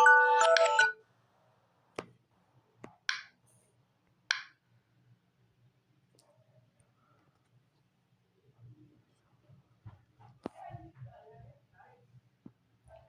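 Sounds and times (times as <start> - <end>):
mallet-like alarm melody: 0.0 - 0.9.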